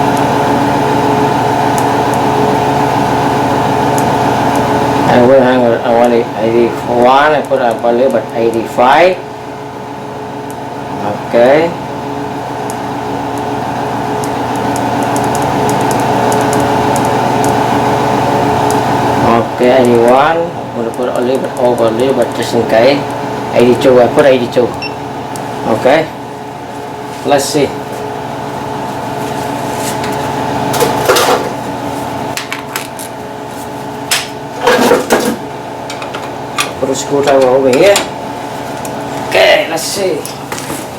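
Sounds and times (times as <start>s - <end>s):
steady machine hum: 0.0s - 40.9s.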